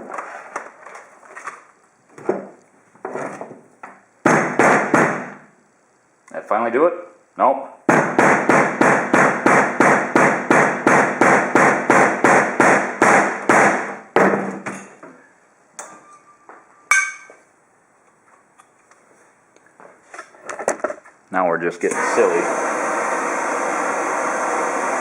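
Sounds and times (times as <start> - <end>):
metallic clink: 15.8 - 17.4.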